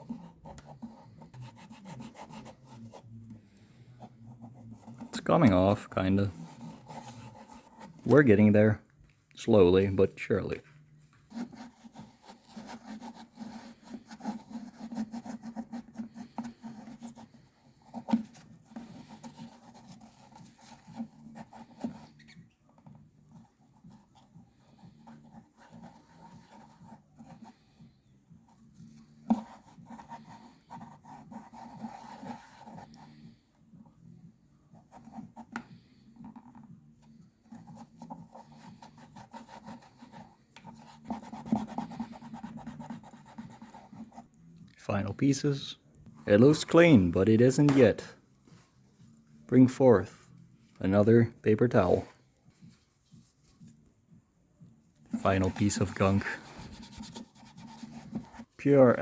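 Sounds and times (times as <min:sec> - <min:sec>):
paper towel rubbing plastic: 0:00.0 - 0:08.8, 0:11.2 - 0:22.4, 0:23.5 - 0:33.3, 0:34.8 - 0:44.4, 0:55.0 - 0:59.0.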